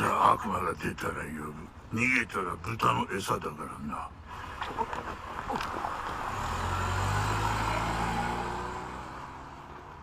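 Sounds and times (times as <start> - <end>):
car engine passing by: 5.8 - 10.0.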